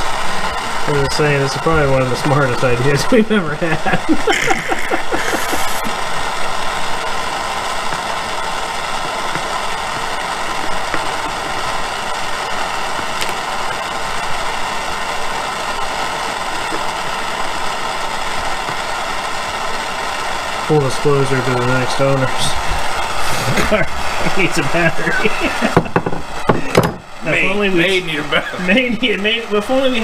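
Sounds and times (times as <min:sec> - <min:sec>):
machine whirring hum: 0:00.0 - 0:30.0.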